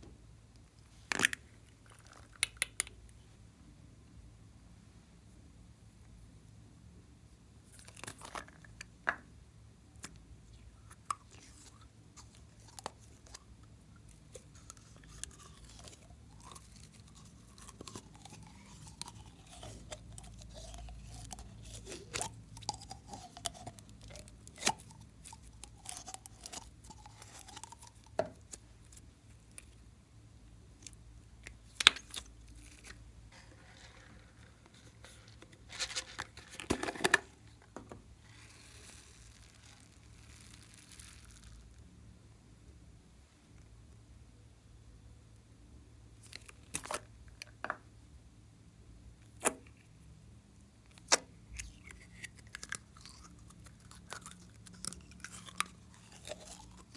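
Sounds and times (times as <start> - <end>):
slime clicking and crackling: 0.9 - 3.0, 14.1 - 29.7, 38.3 - 41.8, 50.9 - 56.9
slime popping: 38.3 - 41.8.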